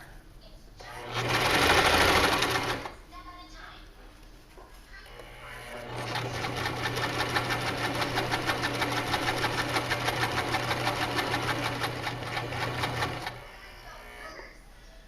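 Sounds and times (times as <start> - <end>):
sewing machine stitching: 0.9 - 3.0, 5.1 - 13.5.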